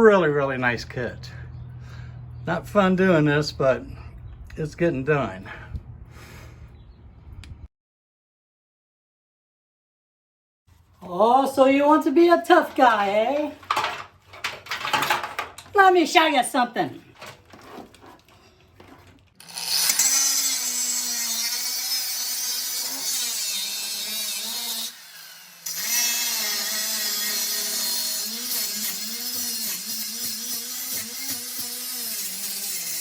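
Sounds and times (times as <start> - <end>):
power tool cutting sheet metal: 18.8 - 33.0.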